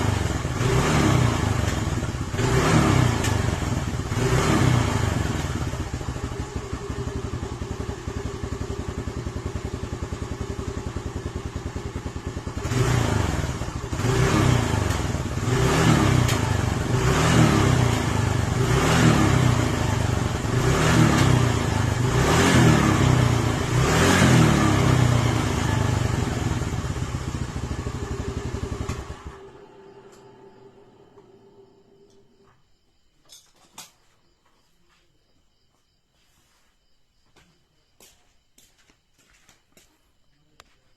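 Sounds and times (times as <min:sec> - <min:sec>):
scooter engine idling and revving: 0:00.0 - 0:32.6.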